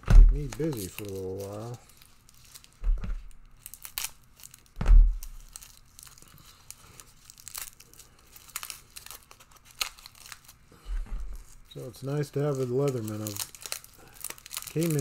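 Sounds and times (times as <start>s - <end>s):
items thumping down: 0.0s - 0.9s, 2.8s - 3.4s, 4.8s - 5.4s
packaging crinkling and rustling: 0.3s - 15.0s.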